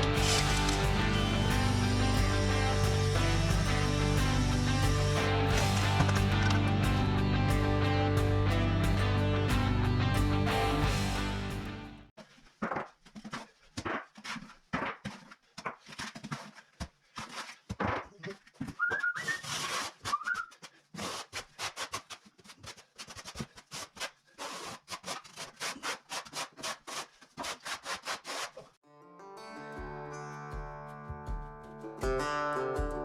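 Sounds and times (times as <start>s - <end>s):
short squeak: 18.8s - 20.5s
quick scraping strokes: 19.2s - 28.8s.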